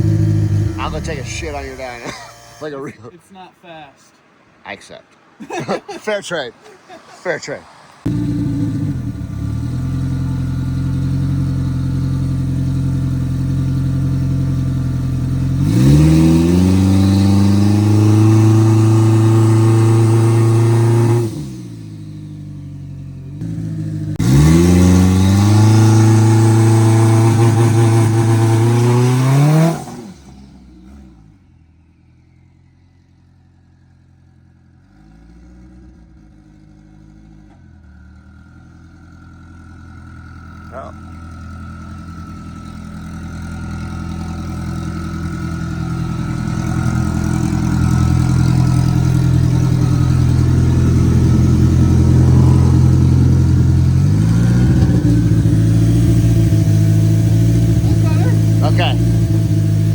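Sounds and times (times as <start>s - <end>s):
engine idling: 0.0s - 2.8s, 7.9s - 27.3s, 35.6s - 59.9s
race car engine revving: 0.0s - 3.1s, 6.6s - 22.2s, 23.4s - 31.2s, 41.8s - 59.9s.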